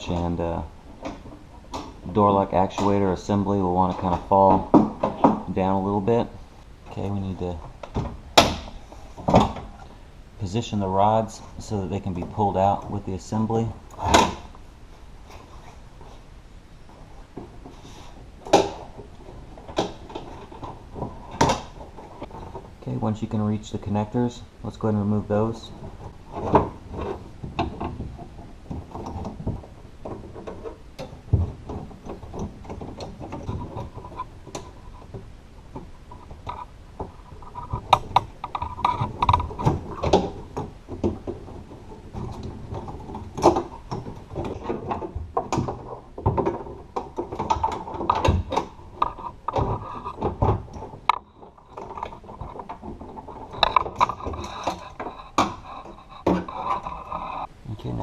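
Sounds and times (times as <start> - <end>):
door latch clicks and rattles: 13.9 - 14.5, 42.2 - 56.8.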